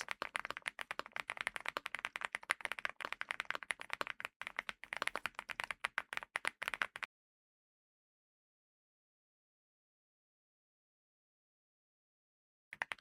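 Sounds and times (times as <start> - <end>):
mechanical keyboard typing: 0.0 - 7.1, 12.8 - 13.0.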